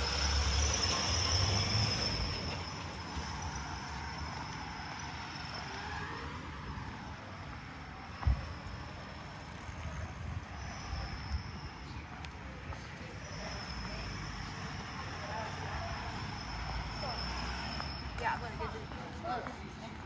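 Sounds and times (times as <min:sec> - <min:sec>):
traffic rumble: 0:00.0 - 0:20.0.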